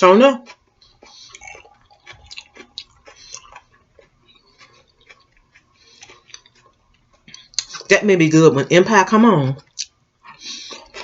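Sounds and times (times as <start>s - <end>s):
person chewing food: 0.4s - 7.9s, 9.6s - 11.0s
wet mouth noises: 0.8s - 7.8s.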